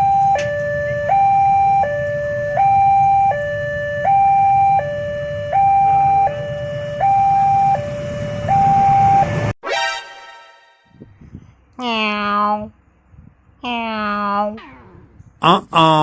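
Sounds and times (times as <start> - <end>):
two-tone hi-lo siren: 0.0 - 11.0.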